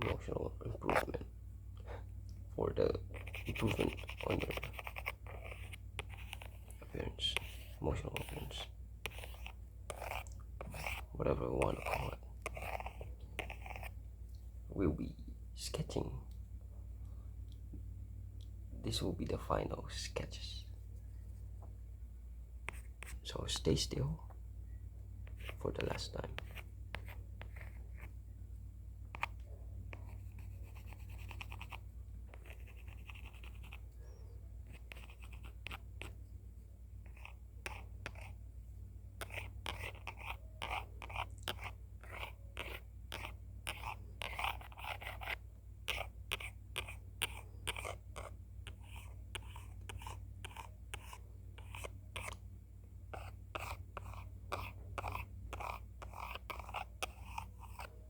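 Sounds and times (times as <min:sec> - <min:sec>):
low steady hum: 0:00.0 - 0:58.0
pencil sketching strokes: 0:03.1 - 0:13.9, 0:25.3 - 0:28.1, 0:29.1 - 0:33.9, 0:34.6 - 0:36.2, 0:37.0 - 0:38.4, 0:39.2 - 0:52.3, 0:53.1 - 0:58.0.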